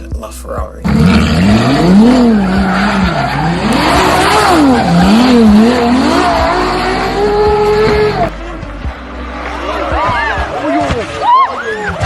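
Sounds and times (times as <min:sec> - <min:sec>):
car engine revving hard: 0:00.8 - 0:08.3.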